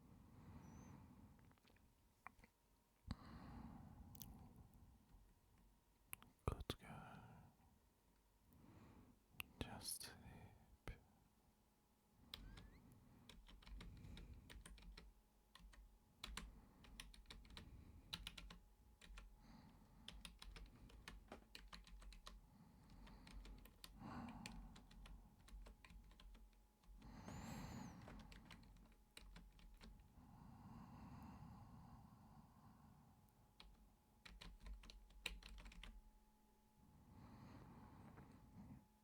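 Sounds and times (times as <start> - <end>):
soft breath: 0.0 - 1.8, 3.1 - 5.1, 8.5 - 11.2, 16.4 - 21.3, 22.3 - 25.6, 26.8 - 33.8, 36.8 - 39.0
keyboard typing: 12.3 - 30.0, 33.6 - 36.0.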